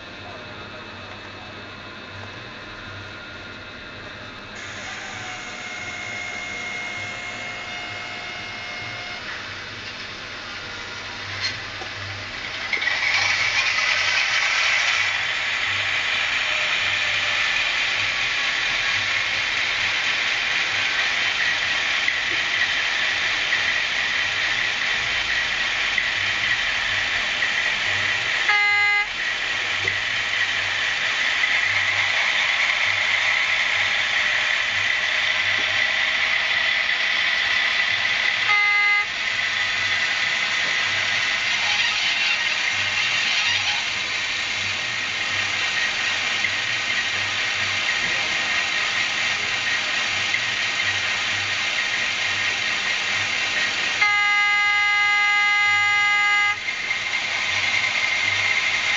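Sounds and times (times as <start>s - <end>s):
model diesel engine sound: 0.0s - 58.9s
horn toots: 28.4s - 29.2s, 38.4s - 39.2s, 54.0s - 56.7s.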